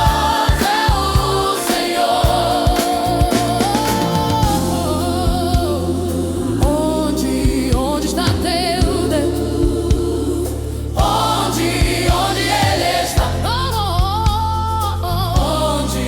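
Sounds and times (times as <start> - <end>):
drum beat: 0.0 - 4.6, 11.0 - 14.5
choir-like vocals singing: 0.0 - 14.3, 15.0 - 16.0
bass line: 0.0 - 16.0.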